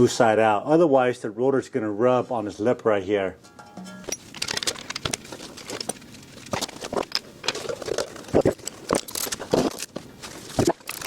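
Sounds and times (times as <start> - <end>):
metal parts clinking and scraping: 3.6 - 11.0.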